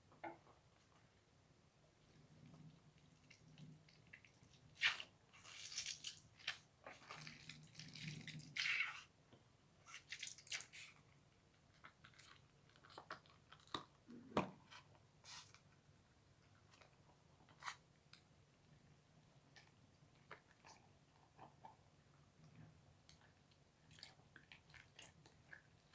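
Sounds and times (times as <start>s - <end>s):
slime squelching: 2.4s - 9.1s, 9.8s - 14.4s.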